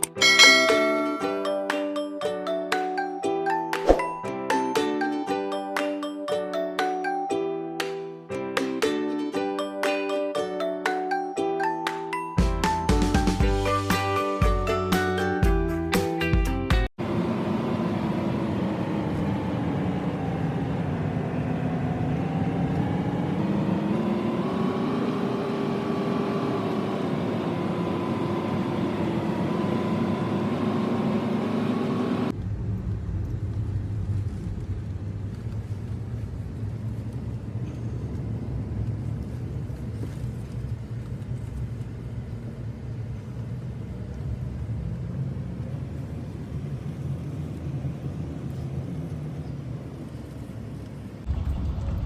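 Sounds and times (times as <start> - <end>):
vehicle engine running: 17.0 - 51.9
low steady rumble: 32.3 - 52.0.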